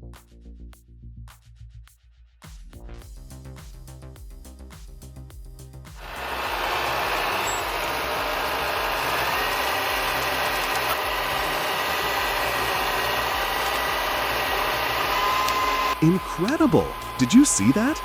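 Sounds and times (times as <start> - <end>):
diesel engine running: 6.0 - 18.0
thin high whine: 6.0 - 18.0.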